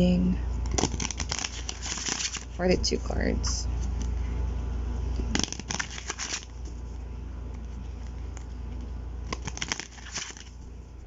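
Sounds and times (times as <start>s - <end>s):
low hum: 0.0s - 11.0s
cards being shuffled: 0.6s - 2.5s, 5.1s - 10.7s.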